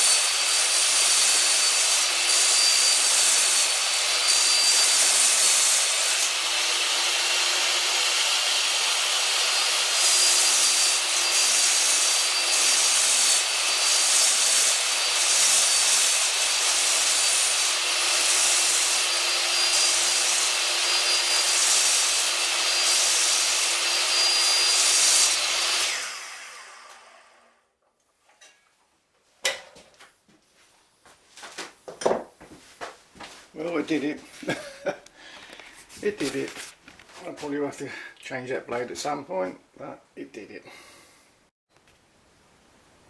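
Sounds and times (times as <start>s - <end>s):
power saw cutting metal: 0.0s - 27.6s.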